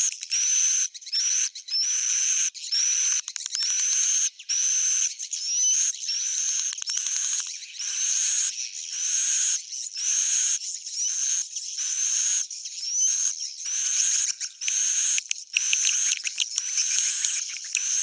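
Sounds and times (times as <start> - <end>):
swiftlet twittering chirps: 4.0 - 18.0.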